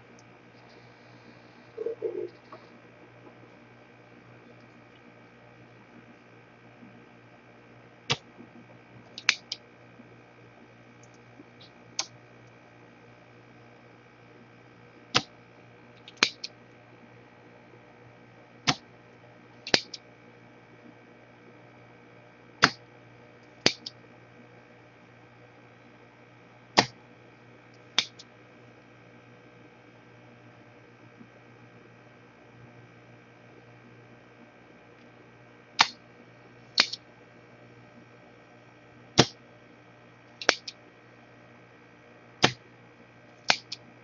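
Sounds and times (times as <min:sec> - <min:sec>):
low electrical hum: 0:00.0 - 0:44.0
sharp clicks: 0:09.1 - 0:09.6, 0:16.0 - 0:16.5, 0:19.7 - 0:20.0, 0:28.0 - 0:28.3, 0:35.8 - 0:36.0, 0:36.8 - 0:37.0, 0:40.4 - 0:40.8, 0:43.5 - 0:43.8.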